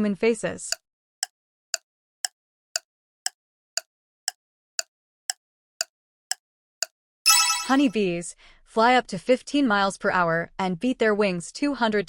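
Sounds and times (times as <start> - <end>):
countdown timer ticking: 7.3 - 8.0.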